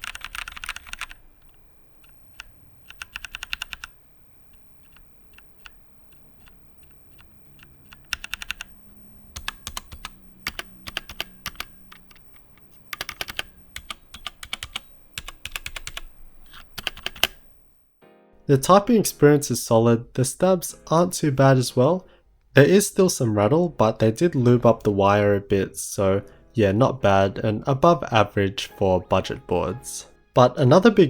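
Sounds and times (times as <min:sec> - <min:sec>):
mechanical keyboard typing: 0:00.0 - 0:17.6.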